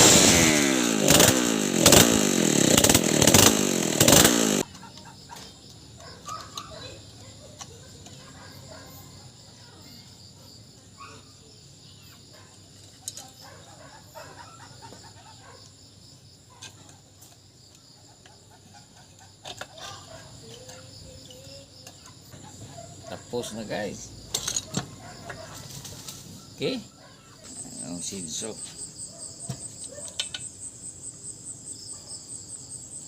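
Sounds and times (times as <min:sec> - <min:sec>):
chickens clucking: 0:24.9 - 0:28.6.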